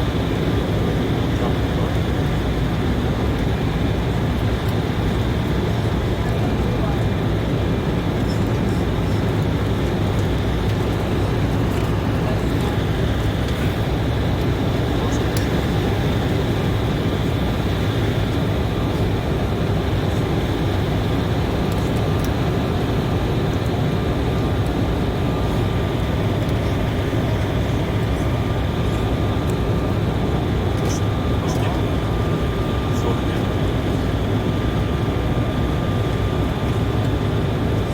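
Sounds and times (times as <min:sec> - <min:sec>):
airliner cabin engine noise: 0:00.0 - 0:37.9.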